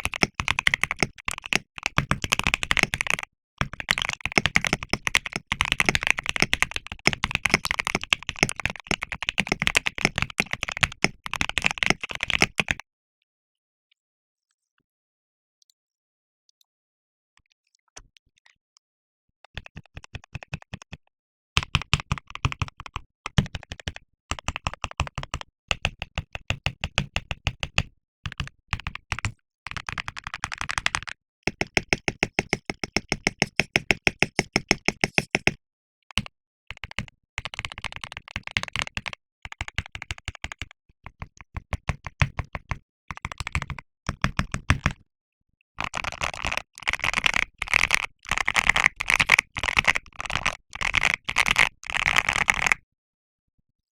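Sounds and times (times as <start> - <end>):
rapid keystrokes on keyboard: 0.0 - 12.8, 21.6 - 35.6, 36.2 - 45.0, 45.8 - 52.8
typing on keyboard: 0.0 - 12.8, 19.6 - 21.0, 21.6 - 45.0, 45.8 - 52.8.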